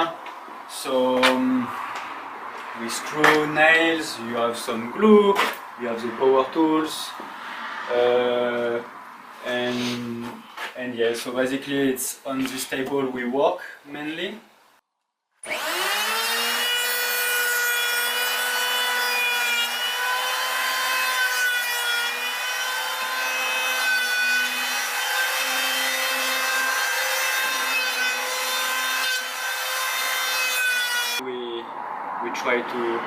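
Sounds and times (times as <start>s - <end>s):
power tool cutting wood: 15.4s - 31.2s.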